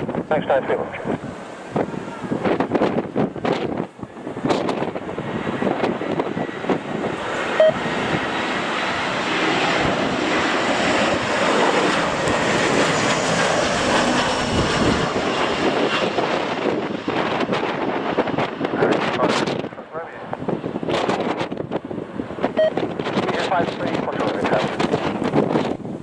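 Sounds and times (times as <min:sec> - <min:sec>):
jet airliner engines roaring: 0:00.0 - 0:26.0.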